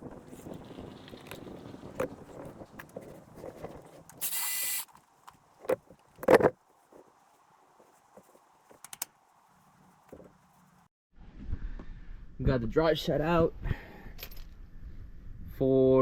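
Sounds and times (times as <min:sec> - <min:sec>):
short hissing burst: 0:04.2 - 0:04.9.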